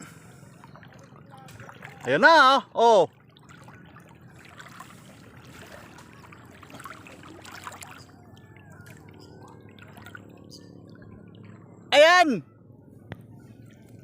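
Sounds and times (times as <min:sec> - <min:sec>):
water trickling and lapping: 0:00.0 - 0:11.9, 0:12.5 - 0:14.0
small ticks and splashes: 0:00.6 - 0:02.2, 0:03.1 - 0:11.6.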